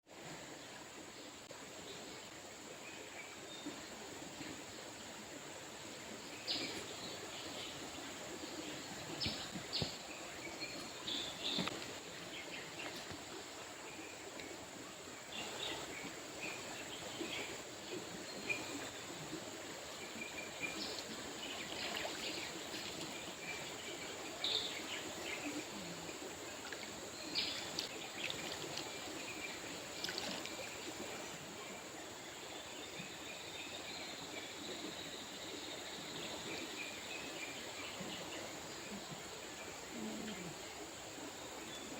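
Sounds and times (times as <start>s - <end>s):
river water running: 0.0s - 41.9s.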